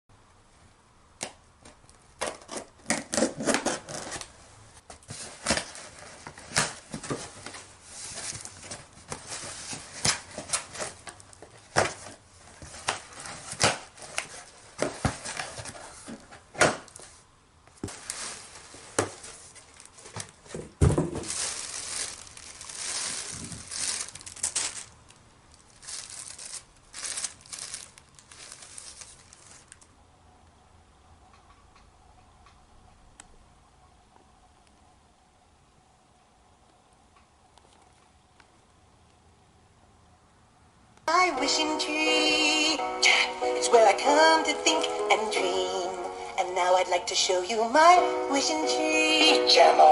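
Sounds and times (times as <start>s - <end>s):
packaging torn and crinkled: 21.2s - 29.9s.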